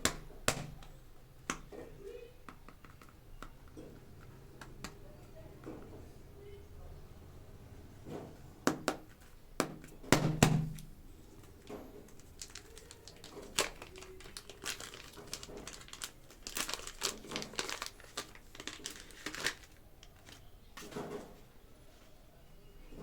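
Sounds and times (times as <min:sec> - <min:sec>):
plastic packaging crinkling: 0:09.1 - 0:21.0.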